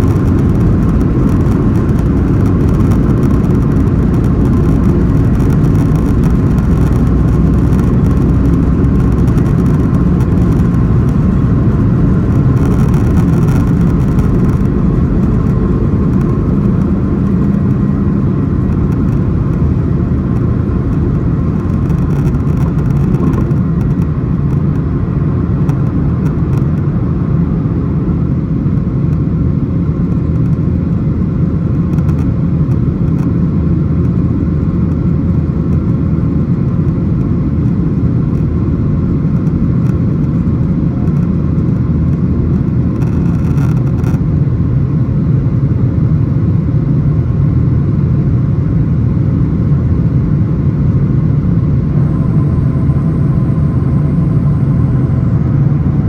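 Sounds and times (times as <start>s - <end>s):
jet engines rumbling: 0.0s - 24.3s, 49.0s - 56.0s
faint steady whine: 0.0s - 24.6s, 47.4s - 56.0s.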